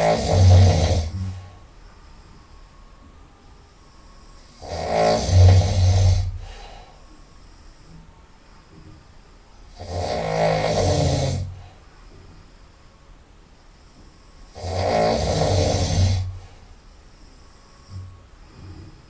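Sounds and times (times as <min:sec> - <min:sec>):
person snoring loudly: 0:00.0 - 0:01.5, 0:04.4 - 0:06.6, 0:09.7 - 0:11.6, 0:14.5 - 0:16.4.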